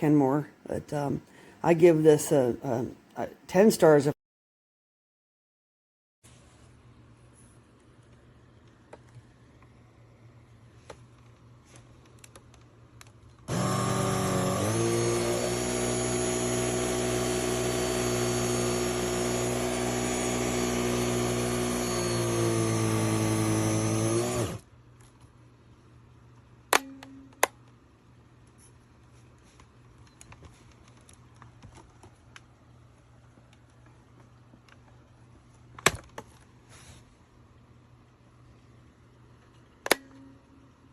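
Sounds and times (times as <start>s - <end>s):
vacuum cleaner motor whine: 13.5s - 24.6s.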